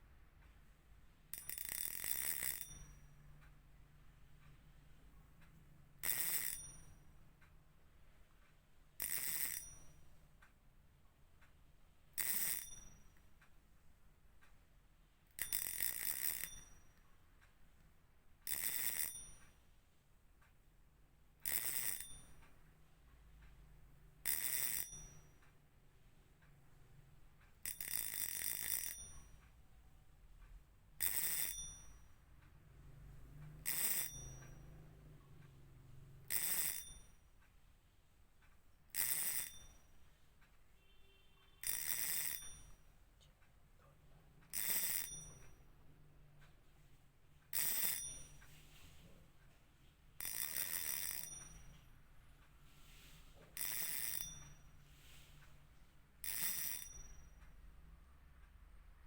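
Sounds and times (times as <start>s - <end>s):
fishing reel drag buzzing: 12.2s - 12.6s, 21.5s - 22.0s, 24.3s - 24.9s, 33.7s - 34.3s, 36.3s - 36.8s, 41.6s - 42.4s.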